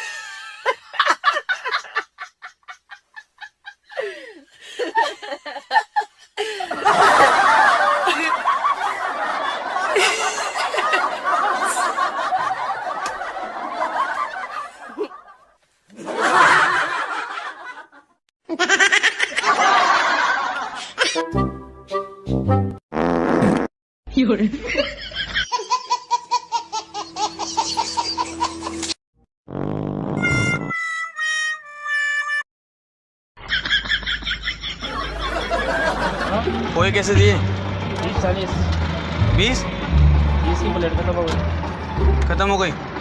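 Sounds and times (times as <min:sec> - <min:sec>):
people laughing: 0:00.0 - 0:21.2, 0:24.5 - 0:28.9, 0:33.4 - 0:38.8.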